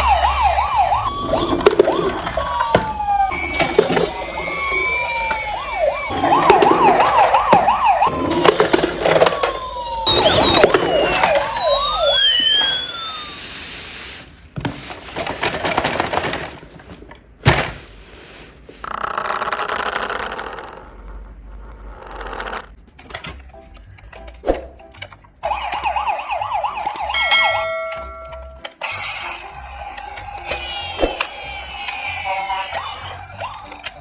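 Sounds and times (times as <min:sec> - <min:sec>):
toy siren wails: 0:00.0 - 0:13.5, 0:25.4 - 0:34.0
toy siren yelps: 0:00.0 - 0:13.5, 0:25.4 - 0:34.0.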